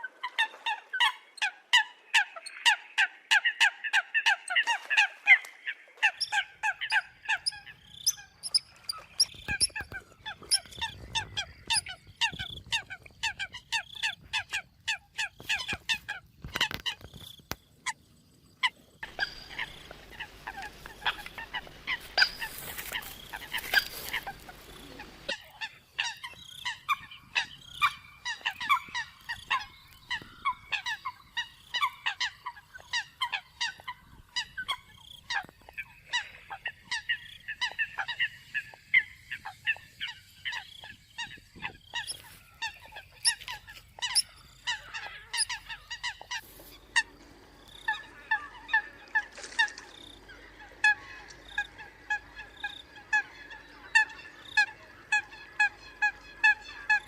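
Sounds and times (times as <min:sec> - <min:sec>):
coots honking calls: 0:18.6 - 0:57.0.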